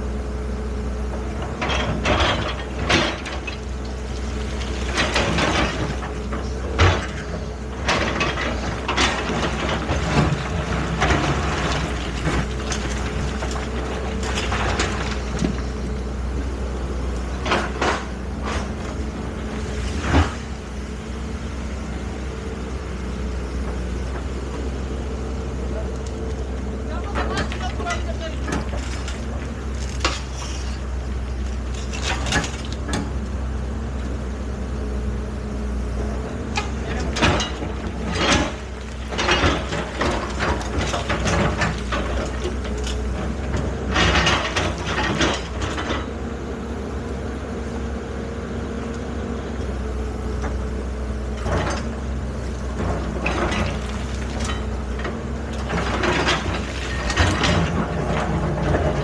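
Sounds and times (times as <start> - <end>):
diesel engine running: 0.0 - 59.0
machine clanks and scrapes: 1.4 - 3.7, 4.7 - 15.8, 17.4 - 19.0, 26.9 - 30.9, 31.7 - 33.2, 36.5 - 46.2, 52.7 - 59.0.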